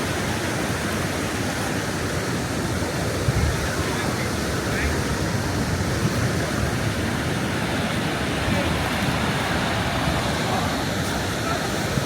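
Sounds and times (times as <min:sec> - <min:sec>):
strong wind on microphone: 0:03.0 - 0:12.0.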